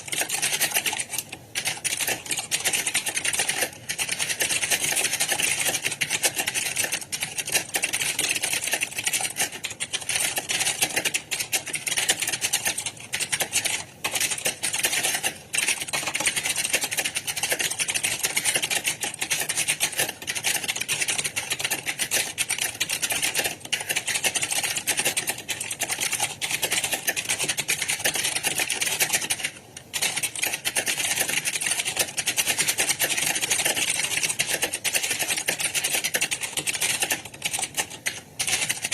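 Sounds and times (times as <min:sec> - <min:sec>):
keyboards clattering: 0:00.0 - 0:38.9.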